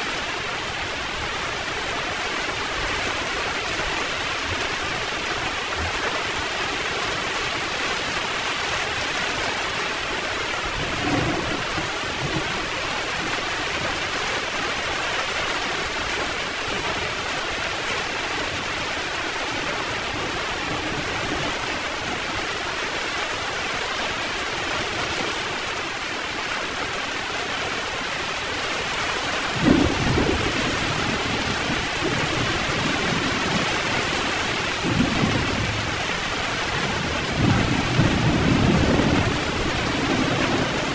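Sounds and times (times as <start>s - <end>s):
heavy rain falling: 0.0s - 40.9s
thunder rumbling: 10.7s - 13.1s, 29.4s - 40.9s.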